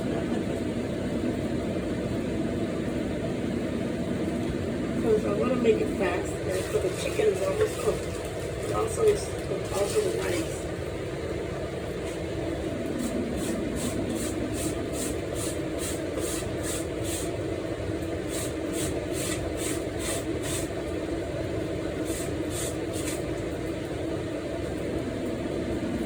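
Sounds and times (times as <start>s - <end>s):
steady whooshing hum: 0.0s - 26.0s.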